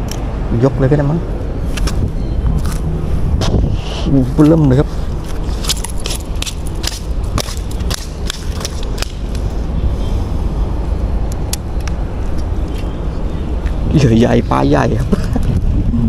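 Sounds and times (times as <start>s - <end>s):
steady low rumble: 0.0s - 16.0s
sharp clicks and knocks: 5.3s - 9.5s.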